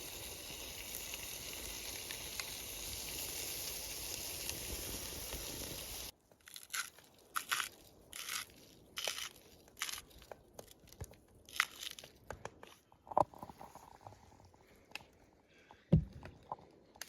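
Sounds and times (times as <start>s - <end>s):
chewing crunchy vegetables: 6.4s - 12.2s.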